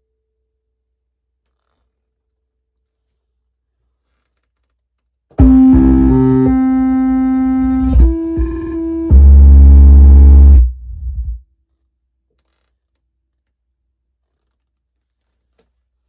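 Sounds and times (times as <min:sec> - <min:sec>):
loud deep bass chord: 0:05.4 - 0:11.4
synthesized held note: 0:05.4 - 0:11.4.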